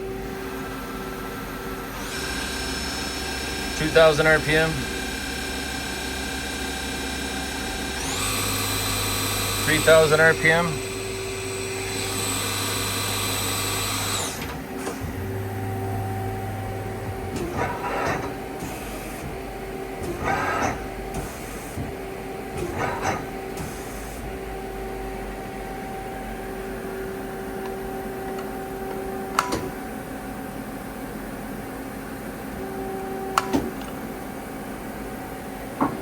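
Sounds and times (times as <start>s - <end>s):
lathe spindle whining: 0.0s - 36.0s
machine's steady hum: 0.0s - 36.0s
servo-driven turret movements: 11.9s - 24.3s.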